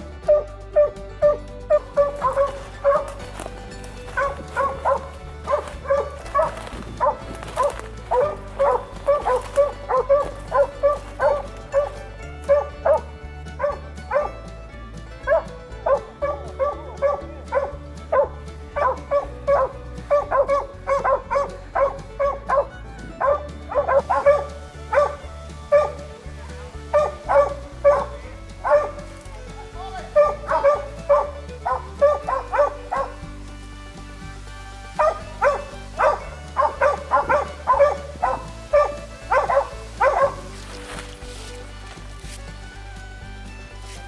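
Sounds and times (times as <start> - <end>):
dogs barking rapidly: 0.0 - 14.4, 15.2 - 42.0
background music with bass line: 0.0 - 44.0.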